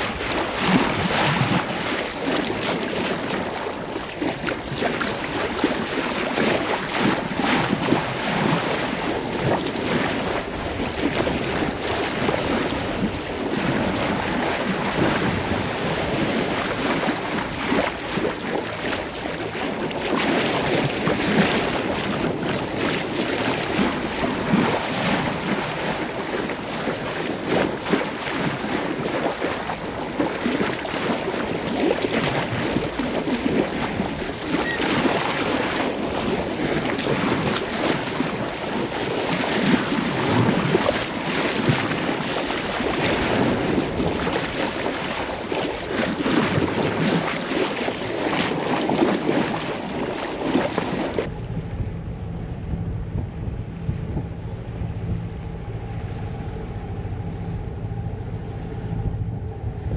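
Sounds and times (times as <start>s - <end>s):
water rushing along hull: 0.0s - 59.9s
wind buffeting microphone: 0.0s - 59.9s
low rumble: 51.2s - 59.9s.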